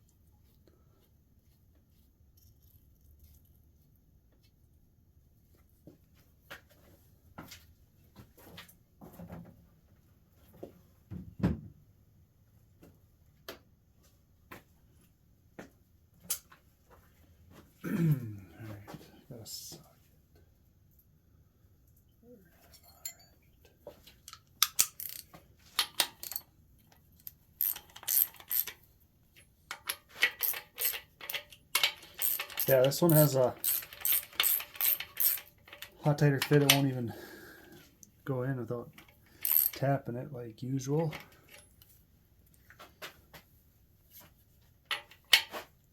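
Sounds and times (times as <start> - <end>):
clinks of hand tools: 22.6 - 23.5, 24.1 - 26.5, 29.7 - 37.0, 39.0 - 39.8.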